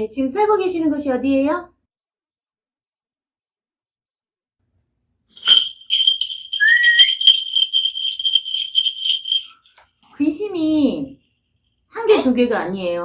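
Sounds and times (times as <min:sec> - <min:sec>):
bell cluster jingling: 0:05.4 - 0:09.8.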